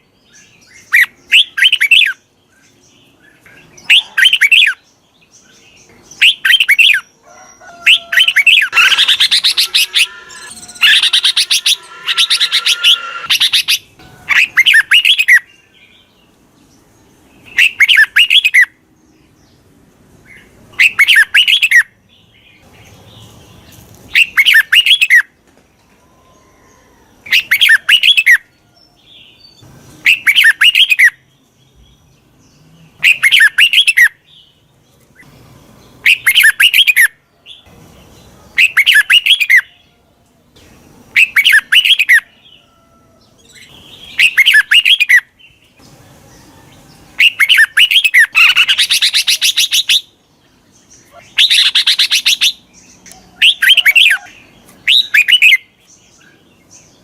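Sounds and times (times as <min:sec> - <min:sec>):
bulbul whistled song: 0:00.7 - 0:02.2, 0:07.8 - 0:15.5, 0:17.5 - 0:18.7, 0:20.8 - 0:21.9, 0:24.1 - 0:25.3, 0:30.0 - 0:31.2, 0:33.0 - 0:34.2, 0:36.0 - 0:37.2, 0:38.6 - 0:39.8, 0:41.2 - 0:42.3, 0:43.8 - 0:45.3, 0:47.2 - 0:50.2, 0:51.3 - 0:55.7.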